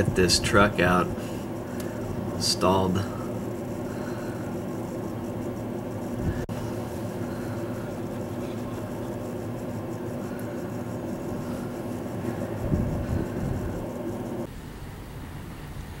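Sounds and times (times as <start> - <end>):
vehicle engine running: 0.0 - 16.0
blizzard wind: 9.0 - 16.0.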